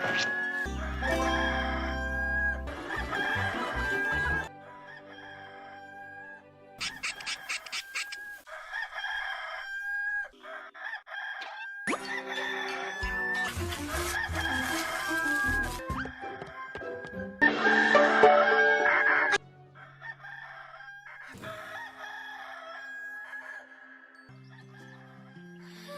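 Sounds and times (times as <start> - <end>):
background music: 0.0 - 7.8, 11.9 - 20.7, 23.2 - 25.9
rooster crowing: 0.1 - 25.6.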